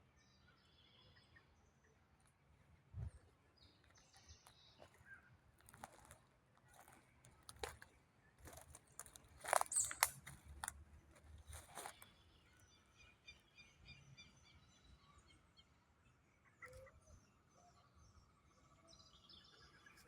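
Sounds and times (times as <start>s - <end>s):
small birds chirping: 3.0s - 15.4s.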